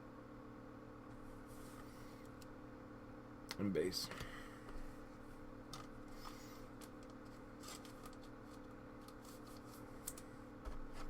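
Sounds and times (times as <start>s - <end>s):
steady low hum: 0.0s - 11.0s
trading cards flicking and scraping: 5.7s - 11.0s.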